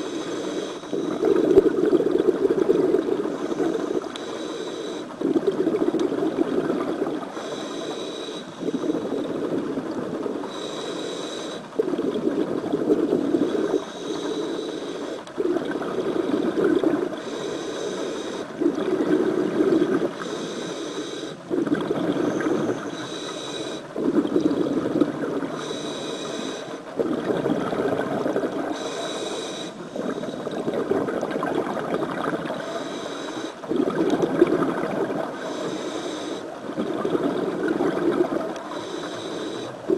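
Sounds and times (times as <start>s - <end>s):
regulator inhale hiss: 0.0s - 1.9s, 2.6s - 5.3s, 7.0s - 9.5s, 10.4s - 11.7s, 13.4s - 15.4s, 16.1s - 26.9s, 28.4s - 30.6s, 32.5s - 33.7s, 35.1s - 36.6s, 38.2s - 39.9s
exhaled air bubbling: 0.0s - 39.9s.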